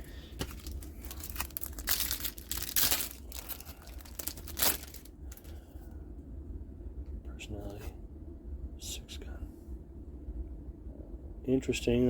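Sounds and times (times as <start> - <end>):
wrapper being torn open: 0.4 - 5.5.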